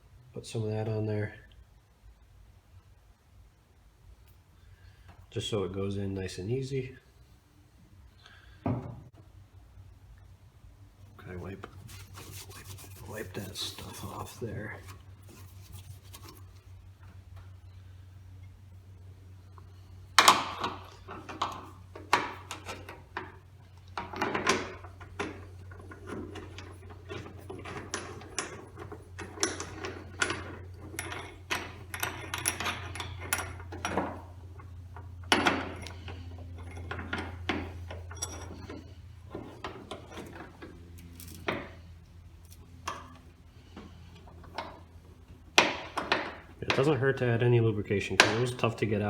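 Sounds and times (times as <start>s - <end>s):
steady low hum: 0.0s - 49.0s
metal hardware and tools clattering: 11.3s - 16.4s, 24.0s - 41.8s.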